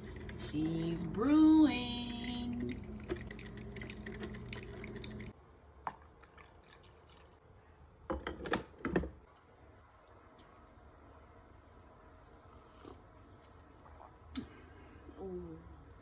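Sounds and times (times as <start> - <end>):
coffee maker humming and hissing: 0.0 - 5.4
coffee dripping: 0.0 - 7.4.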